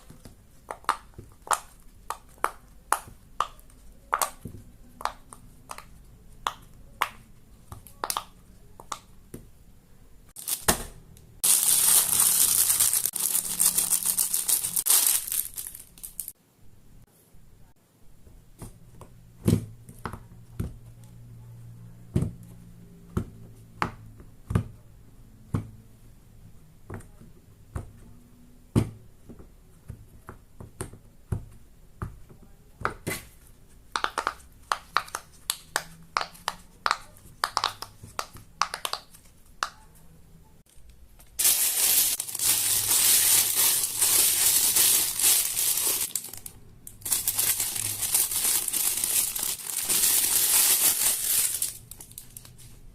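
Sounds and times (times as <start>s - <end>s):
loud continuous crinkling: 11.4s - 16.4s, 41.3s - 52.7s.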